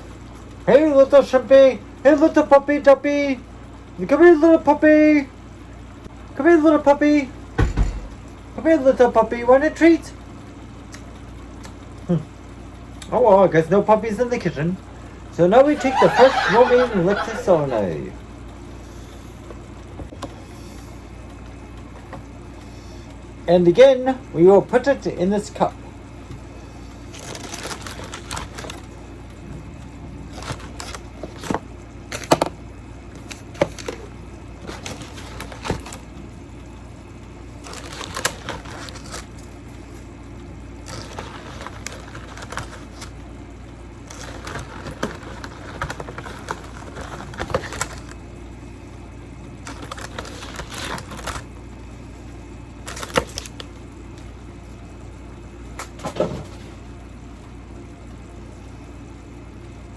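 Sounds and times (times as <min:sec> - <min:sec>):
steady low hum: 0:00.0 - 0:59.9
kitchen items clicking and knocking: 0:34.7 - 0:36.0, 0:44.1 - 0:48.1.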